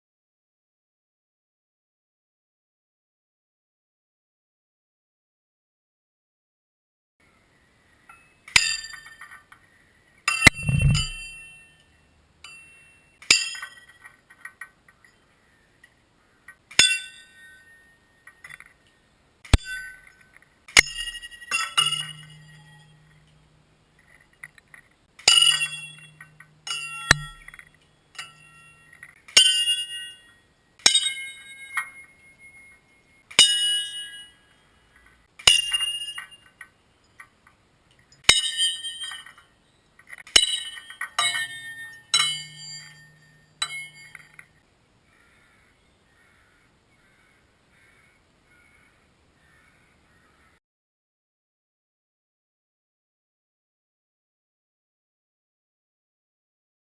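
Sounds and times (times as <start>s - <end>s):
metal platter struck ringing: 10.3s - 11.8s, 19.5s - 20.1s, 20.8s - 23.6s, 25.2s - 34.4s, 40.4s - 44.5s.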